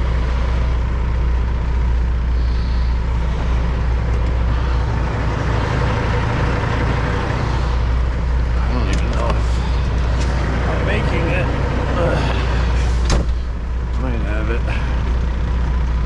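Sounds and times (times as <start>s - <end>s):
diesel truck engine running: 0.0s - 16.0s.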